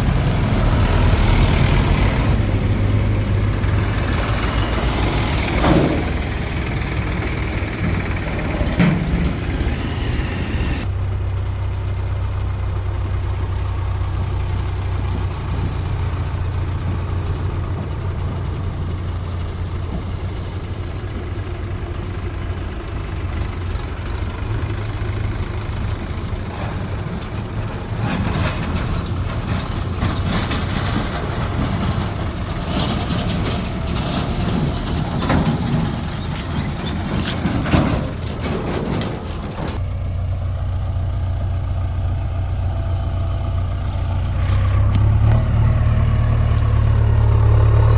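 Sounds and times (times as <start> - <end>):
engine knocks: 0.0 - 10.9, 12.3 - 40.4, 41.0 - 47.9
diesel engine running: 0.0 - 47.9.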